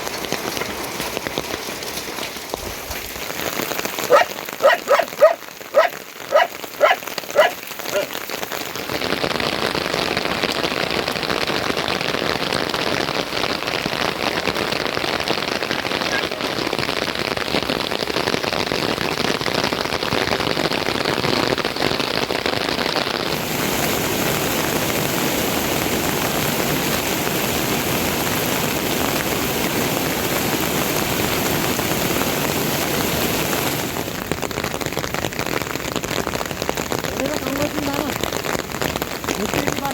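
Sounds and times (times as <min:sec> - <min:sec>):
heavy rain falling: 0:00.0 - 0:39.9
dog barking: 0:04.0 - 0:08.2.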